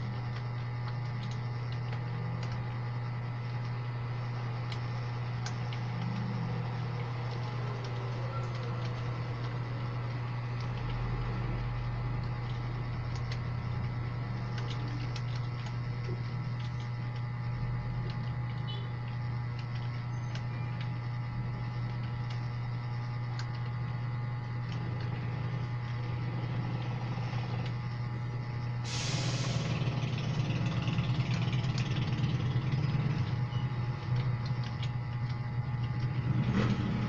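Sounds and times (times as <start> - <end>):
steady low hum: 0.0 - 37.0
computer keyboard key clicks: 14.5 - 16.9.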